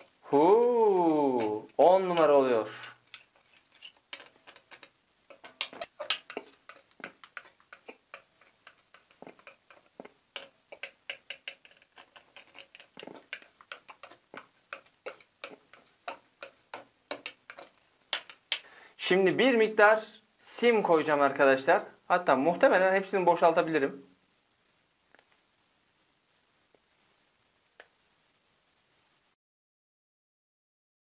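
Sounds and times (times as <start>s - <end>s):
slime being stirred wet clicks: 1.3s - 18.7s.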